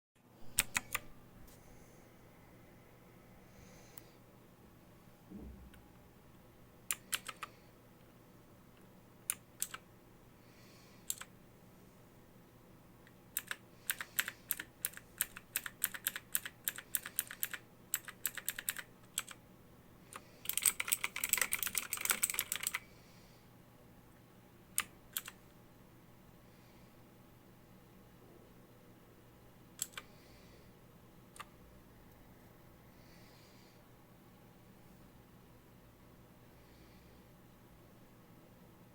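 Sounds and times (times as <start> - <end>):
mechanical keyboard typing: 0.5 - 1.1, 6.9 - 7.5, 9.3 - 9.8, 11.0 - 11.3, 13.3 - 19.4, 20.1 - 22.8, 24.8 - 25.4, 29.8 - 30.0.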